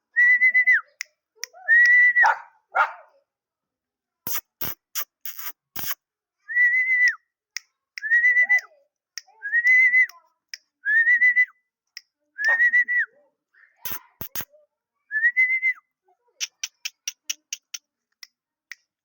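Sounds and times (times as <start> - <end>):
sharp clicks: 13.9 - 14.5.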